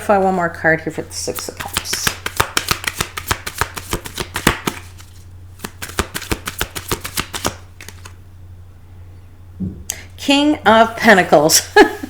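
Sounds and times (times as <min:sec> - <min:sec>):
cards being shuffled: 0:01.3 - 0:08.2.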